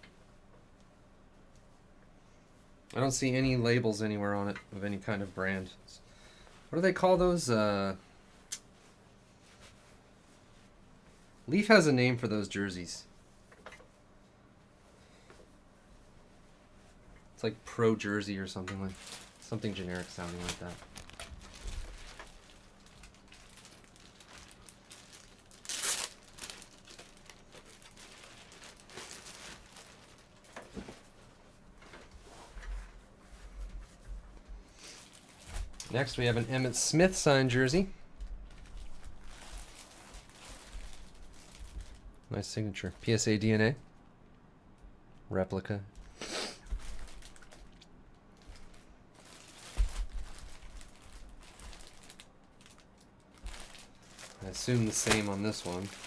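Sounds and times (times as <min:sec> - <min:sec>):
packaging crinkling and rustling: 0:18.4 - 0:33.0, 0:34.8 - 0:43.3, 0:46.7 - 0:56.0.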